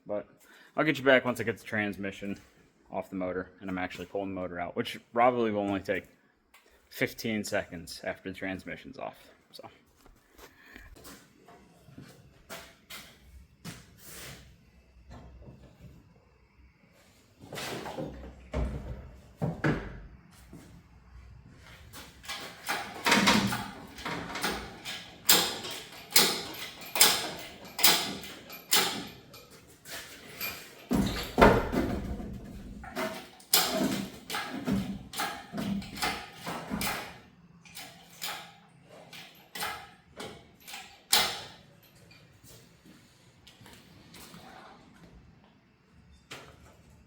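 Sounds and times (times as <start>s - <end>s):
metal clanks and knocks: 22.0s - 42.2s.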